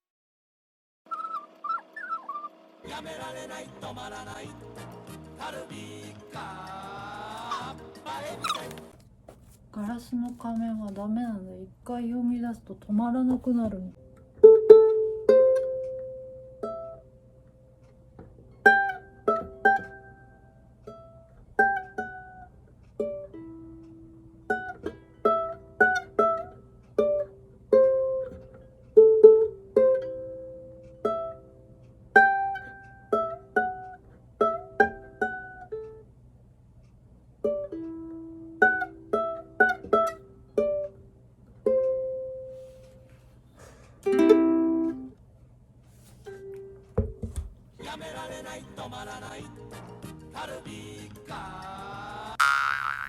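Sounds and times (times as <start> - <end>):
ukulele plucked: 13.7 - 17.2, 18.4 - 36.0, 37.4 - 42.6, 44.0 - 45.2.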